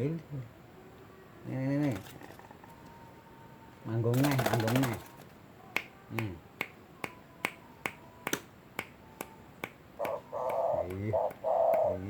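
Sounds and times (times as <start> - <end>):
dove cooing: 10.0 - 12.0.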